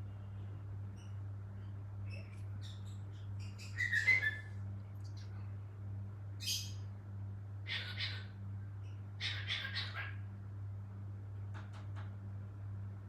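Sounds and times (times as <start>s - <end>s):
cockatiel chirping: 2.1s - 4.5s, 7.7s - 8.3s, 9.2s - 10.2s.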